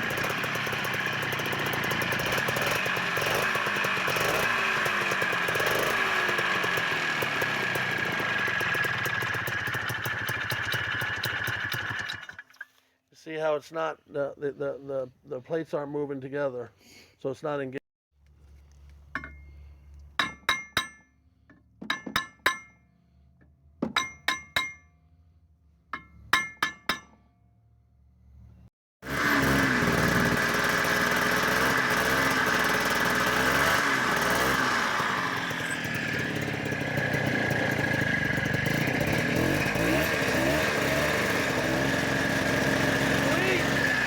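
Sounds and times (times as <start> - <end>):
snowmobile engine whining: 0.0 - 12.4, 29.1 - 44.0
rubber hammer knocking on metal: 21.8 - 22.7, 23.8 - 24.8.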